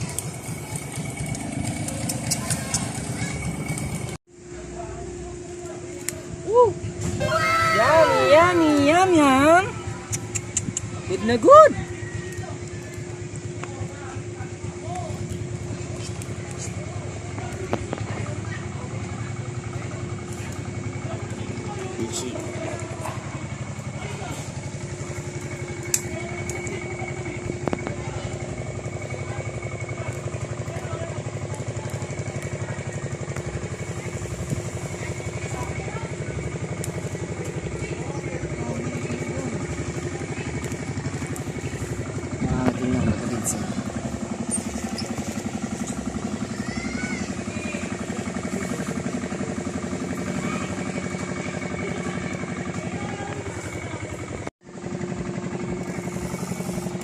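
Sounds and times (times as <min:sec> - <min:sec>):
small engine running: 0:00.0 - 0:57.0.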